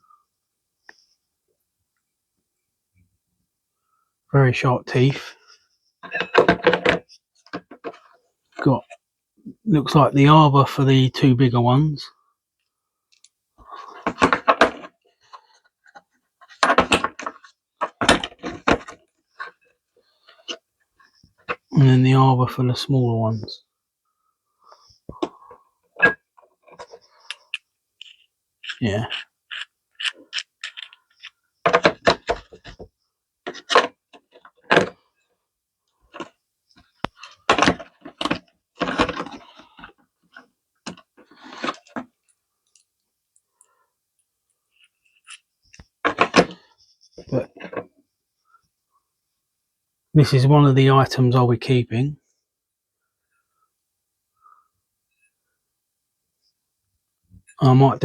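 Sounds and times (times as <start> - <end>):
metal tools clattering in a case: 6.0 - 8.0.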